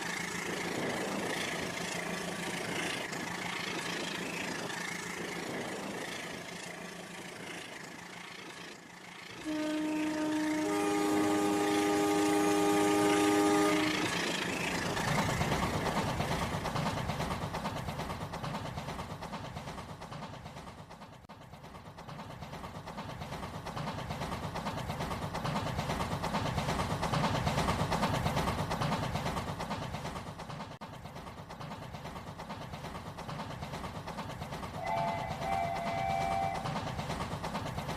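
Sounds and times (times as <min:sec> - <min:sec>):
train rhythmic rumble: 0:00.0 - 0:37.9
train horn chord: 0:09.4 - 0:14.1, 0:34.8 - 0:36.6.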